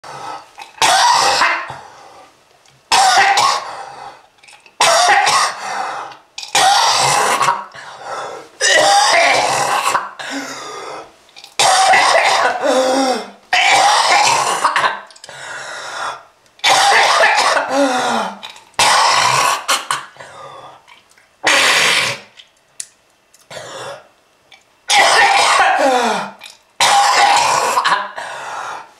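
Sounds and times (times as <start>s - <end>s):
person coughing hard: 0.8s - 1.8s, 2.9s - 3.8s, 4.8s - 5.6s, 6.5s - 7.7s, 8.6s - 10.6s, 11.6s - 15.1s, 16.6s - 20.4s, 21.4s - 22.3s, 24.9s - 28.4s.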